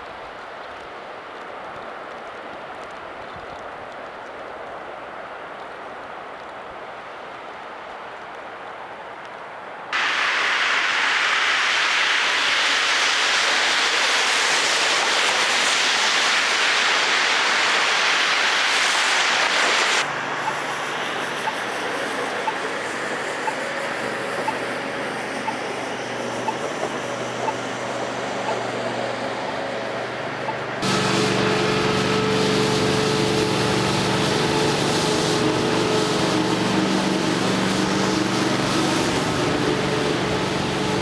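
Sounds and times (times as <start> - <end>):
tyres hissing on slushy road: 9.9 - 41.0
low engine hum: 19.9 - 41.0.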